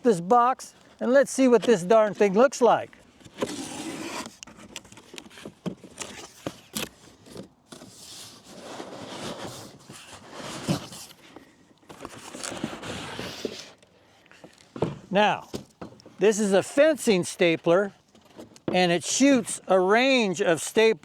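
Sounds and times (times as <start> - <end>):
cardboard packaging rustling: 3.2 - 13.8.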